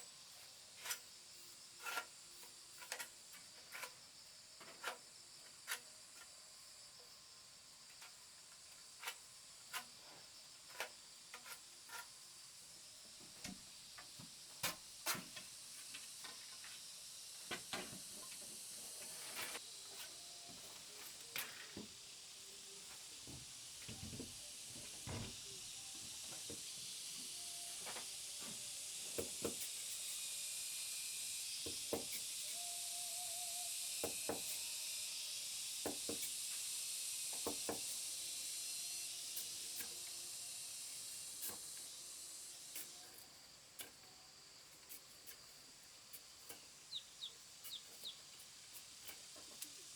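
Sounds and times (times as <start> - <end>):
steady high hiss: 12.2 - 49.9.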